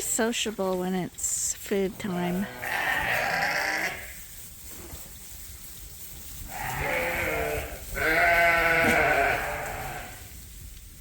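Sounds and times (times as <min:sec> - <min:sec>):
sheep bleating: 0:02.2 - 0:04.2, 0:06.5 - 0:10.2.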